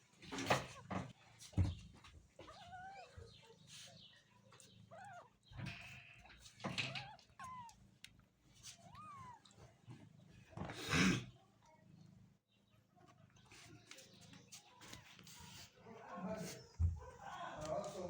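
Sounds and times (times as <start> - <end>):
cat meowing: 4.8 - 7.8, 8.7 - 9.6.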